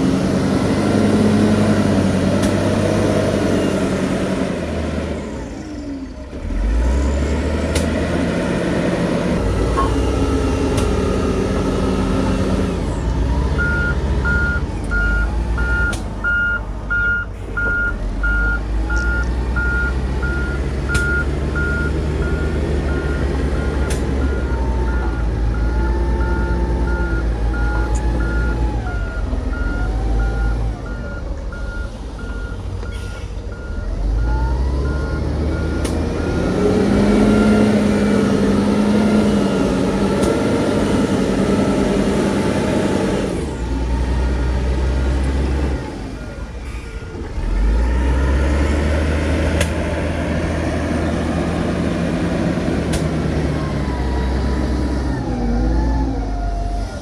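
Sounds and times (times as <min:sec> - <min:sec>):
heavy diesel machinery running: 0:00.0 - 0:57.0
reversing alarm beeping: 0:09.6 - 0:39.7.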